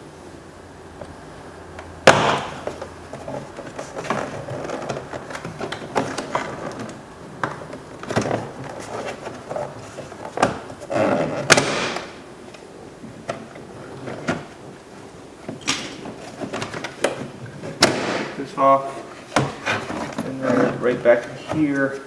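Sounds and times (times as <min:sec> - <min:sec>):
plastic trim scraping: 0:02.1 - 0:12.2, 0:15.5 - 0:22.0.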